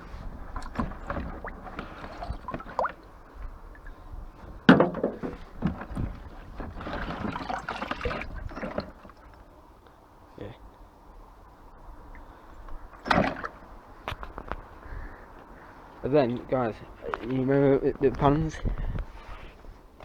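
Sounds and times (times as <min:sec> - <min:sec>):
rustling scraping: 0:00.0 - 0:09.5, 0:15.6 - 0:20.0
objects knocking and clattering: 0:00.4 - 0:03.0, 0:04.6 - 0:09.2.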